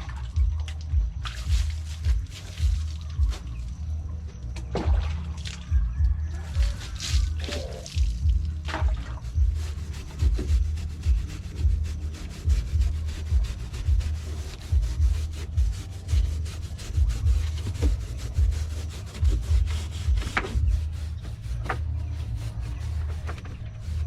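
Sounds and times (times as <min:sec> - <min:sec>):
rhythmic scraping strokes: 0:00.0 - 0:04.7, 0:05.4 - 0:24.0
dull low thump: 0:00.0 - 0:24.0.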